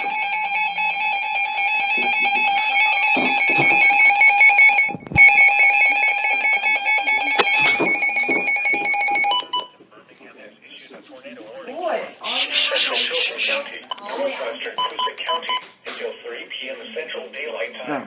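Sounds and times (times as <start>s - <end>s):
electronic alarm tone: 0.0s - 9.6s.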